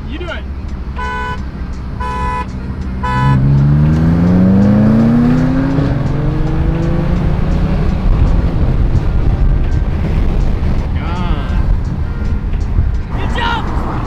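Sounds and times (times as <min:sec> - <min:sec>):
car engine accelerating: 0:00.0 - 0:14.0
car horn toots: 0:00.9 - 0:09.0, 0:11.2 - 0:14.0.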